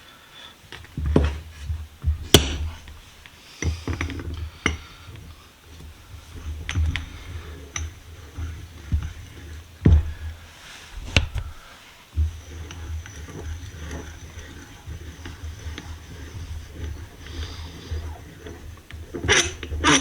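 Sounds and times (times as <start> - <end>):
low handling thuds: 0.9 - 20.0
metal clinks and knocks: 12.2 - 20.0.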